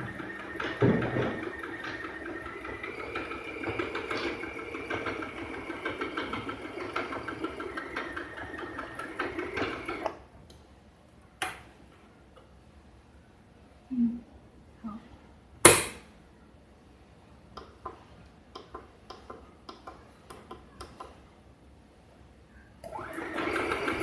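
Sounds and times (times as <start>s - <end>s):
sewing machine stitching: 0.0s - 10.2s, 22.8s - 24.0s.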